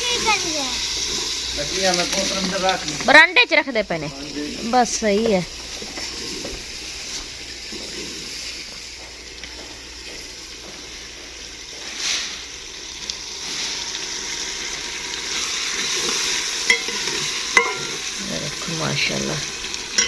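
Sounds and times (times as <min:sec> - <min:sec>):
curry sizzling in a pot: 0:00.0 - 0:20.0.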